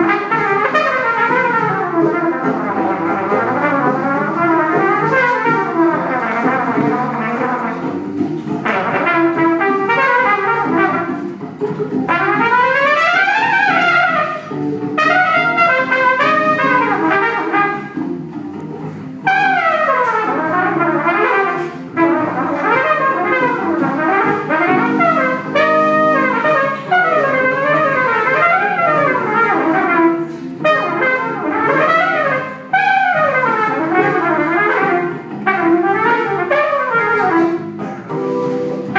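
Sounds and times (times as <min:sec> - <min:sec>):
trumpet: 0:00.0 - 0:38.9
hammond organ: 0:37.3 - 0:38.9.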